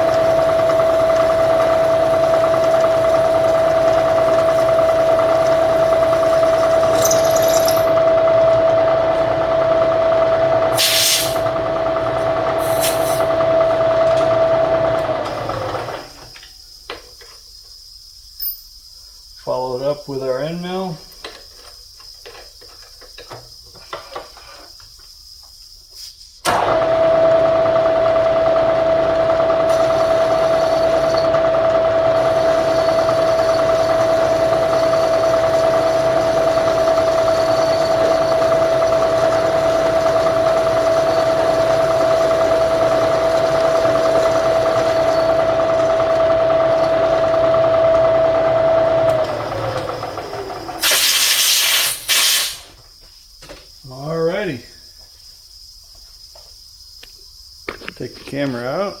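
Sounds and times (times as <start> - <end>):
milling machine spindle whine: 0.0 - 10.8, 26.5 - 51.8
short loud hiss: 10.8 - 11.4, 50.8 - 52.8.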